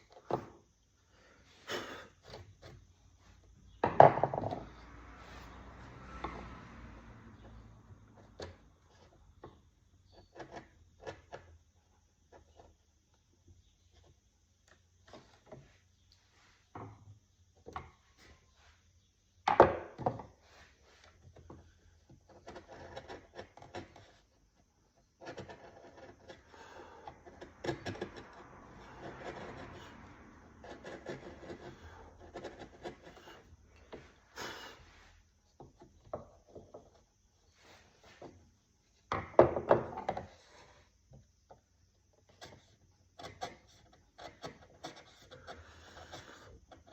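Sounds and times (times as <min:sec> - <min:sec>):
light knocks on wood: 0:03.8 - 0:04.6
tool scraping on wood: 0:20.4 - 0:38.6, 0:42.2 - 0:46.9.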